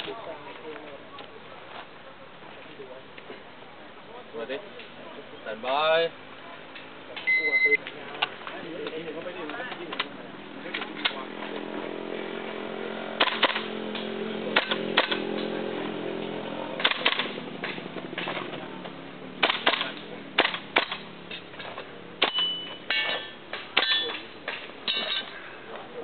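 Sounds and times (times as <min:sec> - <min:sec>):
airsoft rifle shots: 0:13.2 - 0:13.7, 0:14.5 - 0:15.3, 0:16.8 - 0:17.4, 0:19.4 - 0:21.1.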